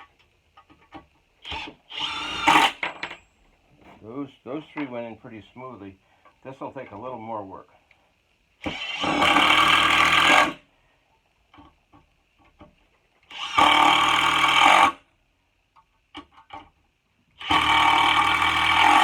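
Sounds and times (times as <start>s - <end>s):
impact driver hammering screws: 1.4s - 3.0s, 17.4s - 19.0s.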